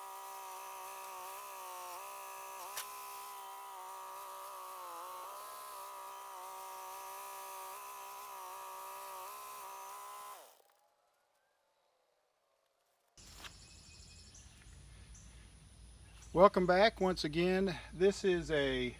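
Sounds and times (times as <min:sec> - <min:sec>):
small motor buzzing: 0:00.0 - 0:10.9.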